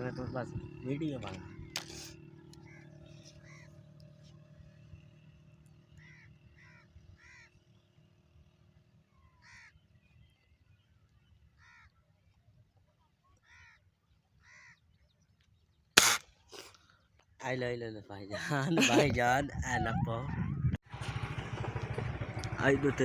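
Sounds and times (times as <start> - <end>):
bird calling: 1.2 - 3.9
air rifle shot: 16.0 - 16.2.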